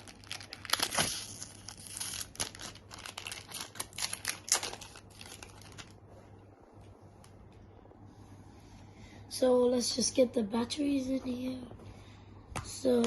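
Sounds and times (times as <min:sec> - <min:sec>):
plastic packaging crinkling and tearing: 0:00.0 - 0:06.0.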